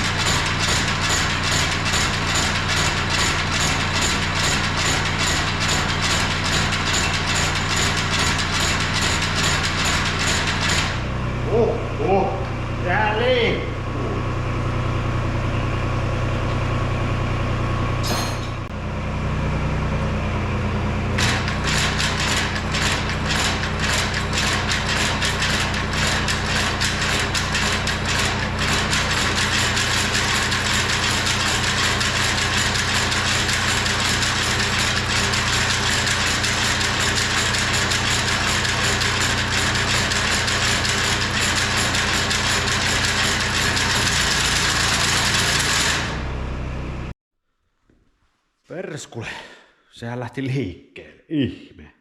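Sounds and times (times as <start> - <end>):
excavator engine running: 13.8 - 47.1
mower cutter bar clattering: 18.0 - 18.7.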